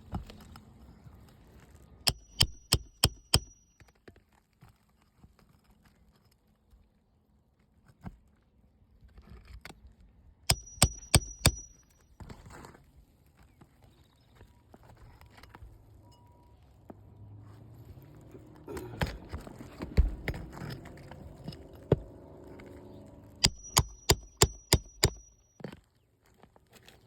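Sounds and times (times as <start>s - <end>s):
hammer striking metal: 2.1s - 3.7s, 10.5s - 11.9s, 23.4s - 25.5s.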